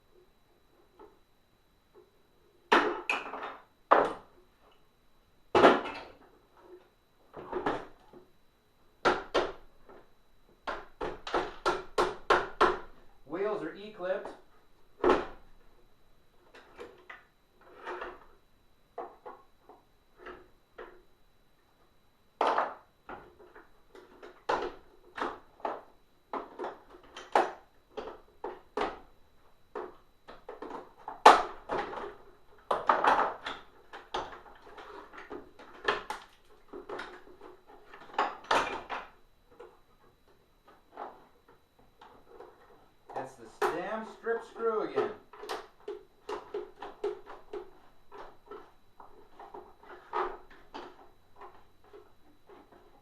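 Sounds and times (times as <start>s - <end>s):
tools clicking and scraping plastic: 16.5s - 18.4s, 29.7s - 53.0s.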